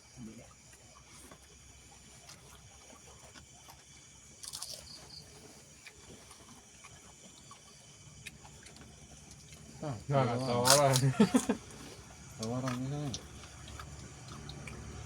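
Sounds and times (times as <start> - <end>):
chewing and utensil clicks: 10.6 - 11.4, 12.4 - 15.0.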